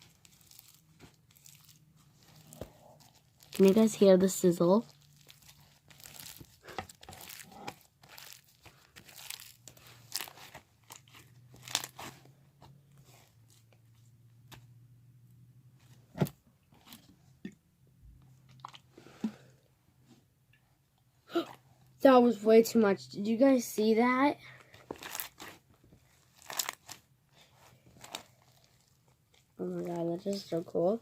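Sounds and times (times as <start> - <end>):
slime crackling and popping: 0.0 - 12.1.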